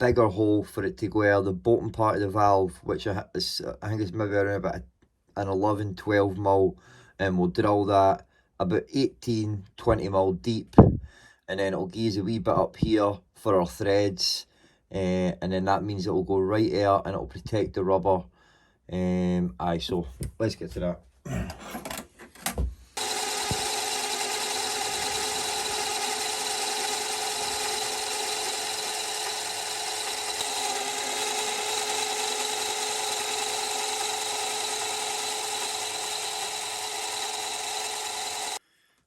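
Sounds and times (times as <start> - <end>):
lathe motor whine: 23.0 - 38.6.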